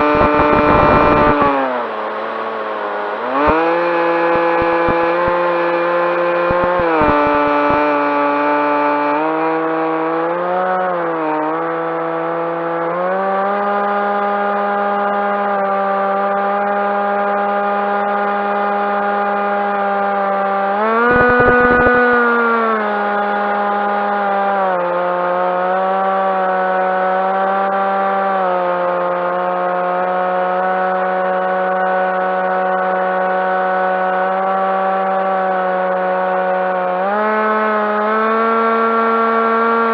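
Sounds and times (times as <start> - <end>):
wind noise: 0.0 - 1.6, 21.0 - 22.3
electric motor and propeller whine: 0.0 - 39.9.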